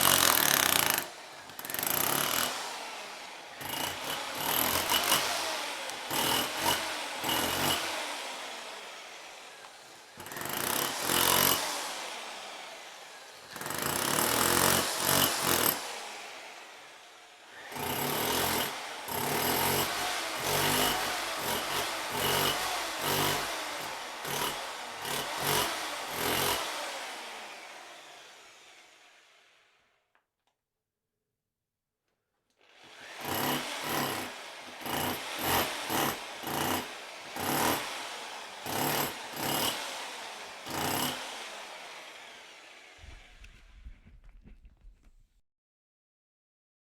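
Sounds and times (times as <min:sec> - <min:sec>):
jackhammer hammering: 0:00.0 - 0:08.9, 0:09.6 - 0:16.4, 0:17.5 - 0:27.7, 0:32.8 - 0:44.2.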